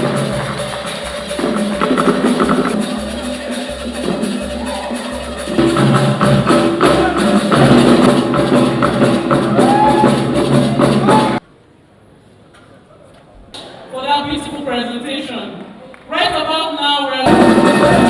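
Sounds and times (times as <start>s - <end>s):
music with steady beat: 0.0s - 11.4s, 17.3s - 18.0s.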